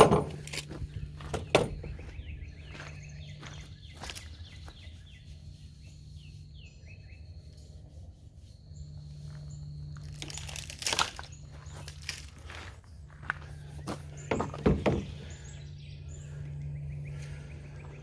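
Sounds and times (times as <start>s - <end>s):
crunching scraping handling noise: 0.0s - 4.9s, 8.6s - 15.6s
small birds chirping: 0.0s - 18.0s
steady low hum: 0.0s - 18.0s.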